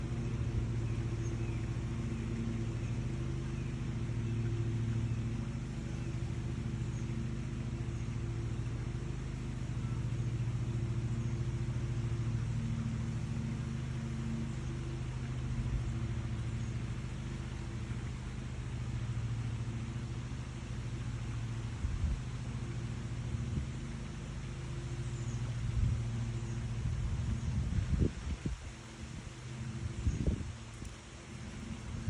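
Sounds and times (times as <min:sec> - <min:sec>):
low mechanical hum: 0:00.0 - 0:32.0.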